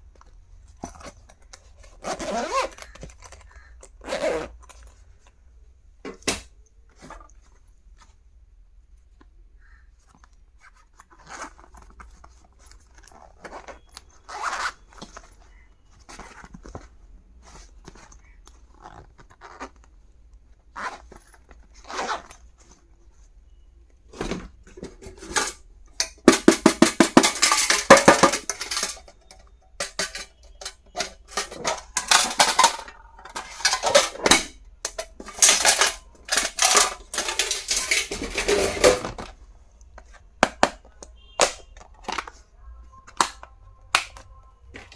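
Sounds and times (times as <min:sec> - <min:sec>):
packaging crinkling and ripping: 0:00.9 - 0:04.9.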